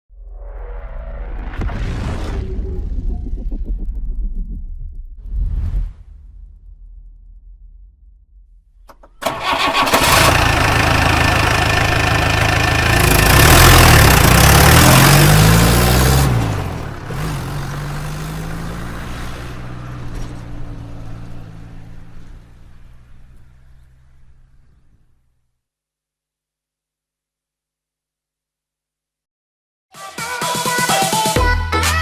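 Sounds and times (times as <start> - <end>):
bus engine starting and revving: 8.9 - 25.2.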